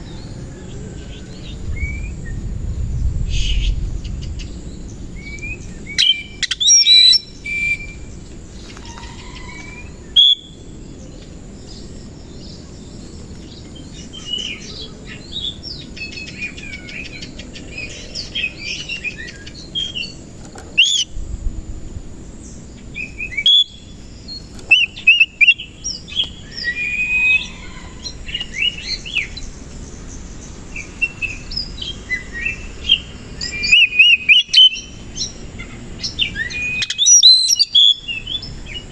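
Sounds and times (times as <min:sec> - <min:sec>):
bird singing rapid whistles: 0:05.2 - 0:08.2, 0:08.8 - 0:10.6, 0:17.9 - 0:21.1, 0:23.0 - 0:29.4, 0:30.8 - 0:35.4, 0:36.0 - 0:38.9.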